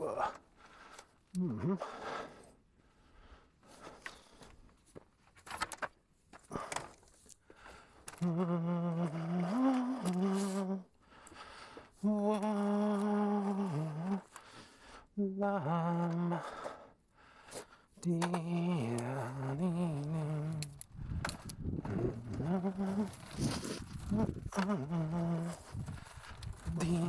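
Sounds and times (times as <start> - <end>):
man humming: 0.0 - 0.4, 1.3 - 2.2, 8.1 - 10.9, 12.0 - 14.3, 15.2 - 16.8, 18.0 - 20.9, 21.8 - 25.9, 26.6 - 27.0.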